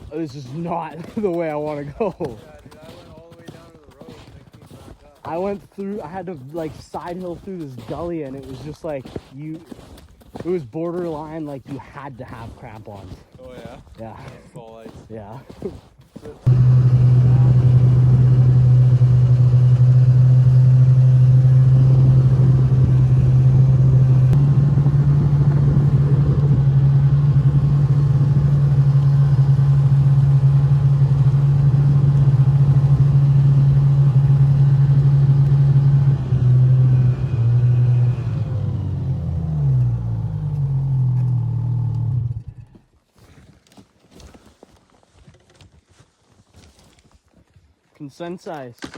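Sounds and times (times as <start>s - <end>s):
snowmobile engine droning: 16.4s - 42.7s.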